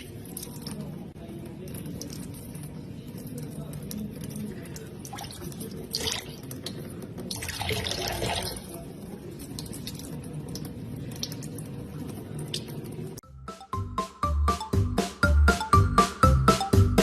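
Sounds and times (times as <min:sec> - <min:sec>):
water splashing and dripping: 0:00.0 - 0:08.8, 0:09.4 - 0:13.0
water gush: 0:00.0 - 0:11.7.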